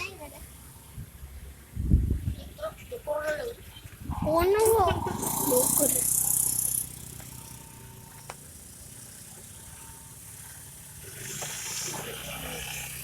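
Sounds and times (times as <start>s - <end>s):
vehicle engine idling: 5.1s - 11.4s.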